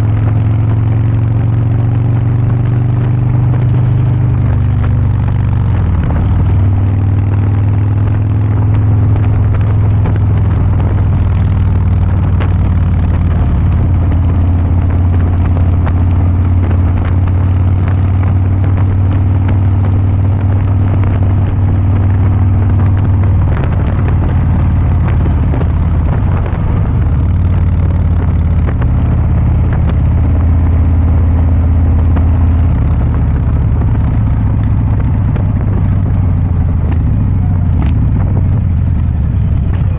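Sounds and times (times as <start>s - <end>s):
motorcycle engine idling: 33.0s - 39.9s.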